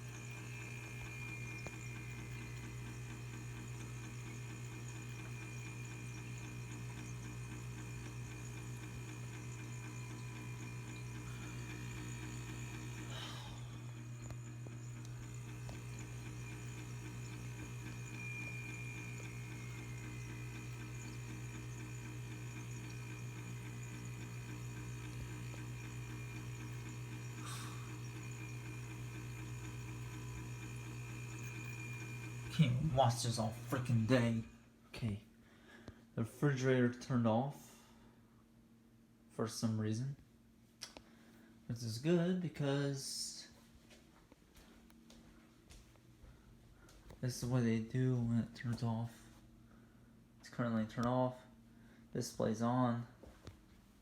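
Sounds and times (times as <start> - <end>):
refrigerator fan motor humming: 0.0 - 34.6
faint high whine: 0.0 - 34.7.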